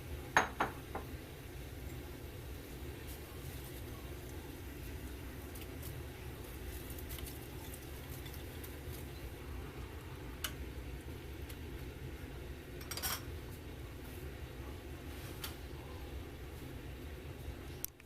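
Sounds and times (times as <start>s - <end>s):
kitchenware clatter: 0.4s - 1.1s, 12.8s - 13.3s
kitchenware clinking: 0.4s - 1.1s, 12.8s - 13.3s.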